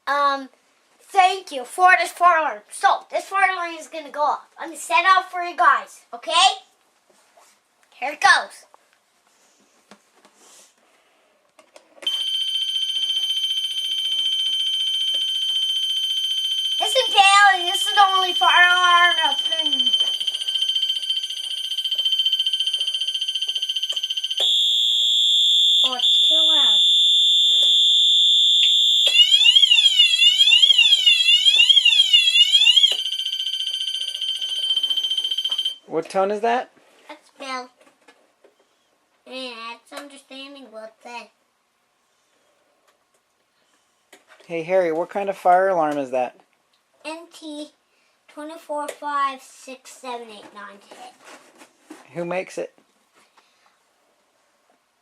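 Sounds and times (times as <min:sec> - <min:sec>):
fire alarm continuous tone: 0:12.0 - 0:35.9.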